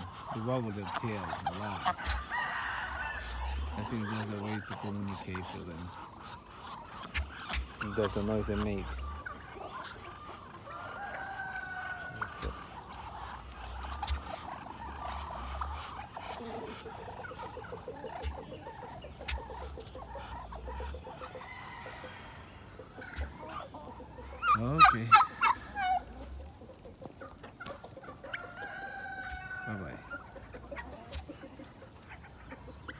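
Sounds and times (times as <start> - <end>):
chickens clucking: 0.0 - 32.9
rooster crowing: 2.0 - 3.6, 10.6 - 12.6, 21.2 - 22.8, 28.3 - 30.0.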